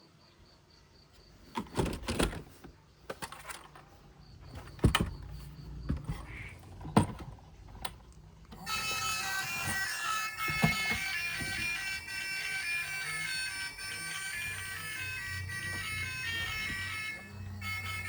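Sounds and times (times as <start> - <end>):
hard objects knocking and clattering: 10.4 - 11.8.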